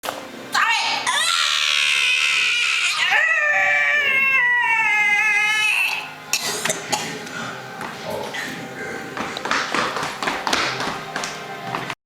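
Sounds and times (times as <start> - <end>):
child wailing: 0.6 - 6.1.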